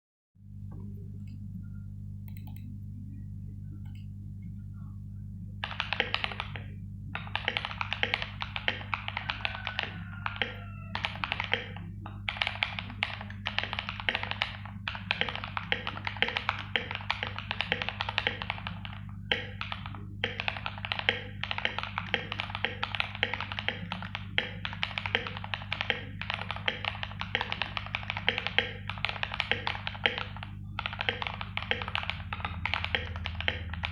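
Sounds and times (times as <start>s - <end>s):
steady low hum: 0.4s - 33.9s
mechanical keyboard typing: 2.3s - 2.6s, 5.6s - 33.9s.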